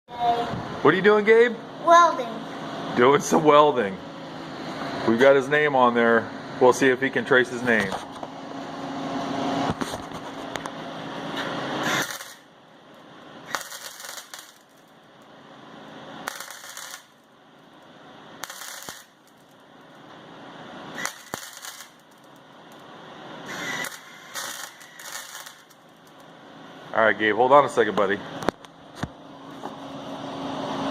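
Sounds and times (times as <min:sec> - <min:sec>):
welding arc crackling: 0:11.7 - 0:20.2, 0:20.9 - 0:26.4.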